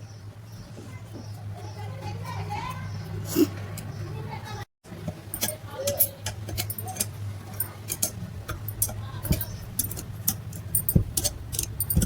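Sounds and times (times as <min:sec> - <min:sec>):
steady low hum: 0:04.9 - 0:12.0
metallic clicks and clinks: 0:05.3 - 0:12.0.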